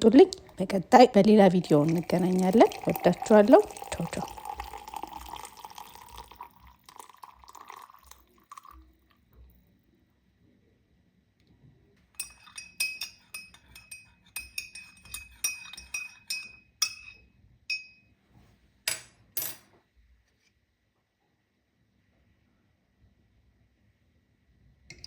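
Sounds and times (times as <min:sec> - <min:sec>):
spoon scraping glass: 0:12.2 - 0:17.9
spoon clinking against glass: 0:12.2 - 0:18.1.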